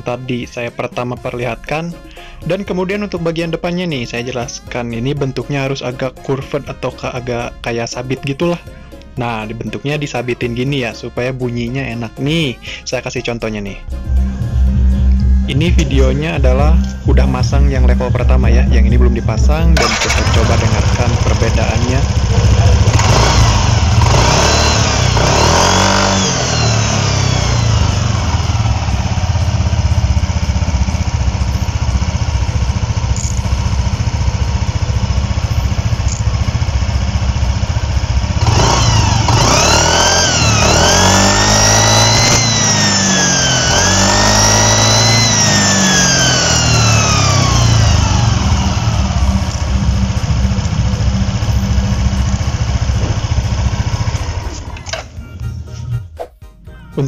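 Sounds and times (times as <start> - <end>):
scooter engine revving: 19.6 - 55.2.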